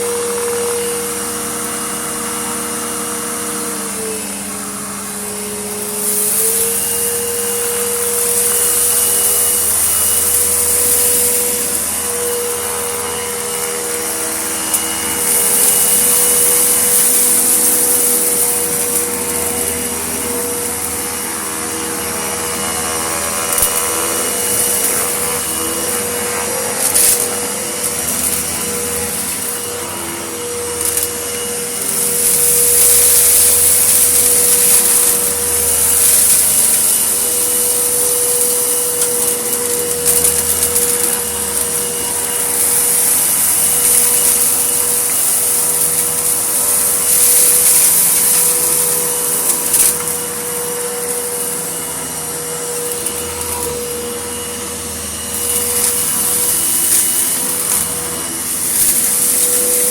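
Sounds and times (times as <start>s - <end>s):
vacuum cleaner running: 0.0s - 59.9s
grit clicking and rattling: 5.8s - 54.2s, 54.8s - 59.9s.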